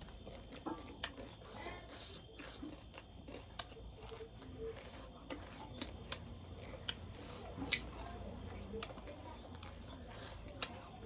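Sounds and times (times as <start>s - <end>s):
crunchy chewing: 0.0s - 11.0s.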